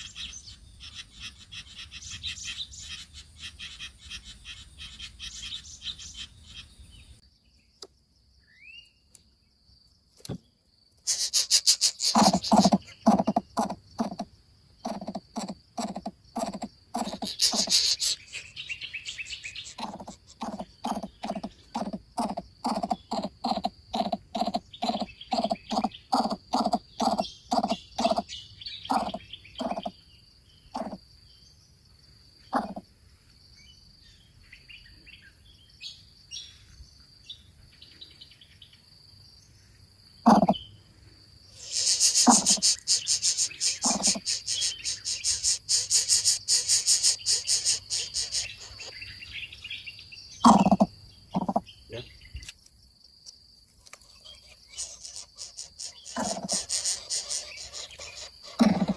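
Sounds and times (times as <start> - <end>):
high insect buzz: 10.2 - 31.1, 32.3 - 32.9, 41.3 - 49.1, 50.4 - 58.9
bird calling short repeated notes: 11.0 - 18.4, 19.5 - 28.3, 28.9 - 29.9, 30.8 - 31.0, 32.5 - 32.8, 40.3 - 40.6, 41.6 - 48.9, 50.4 - 51.7.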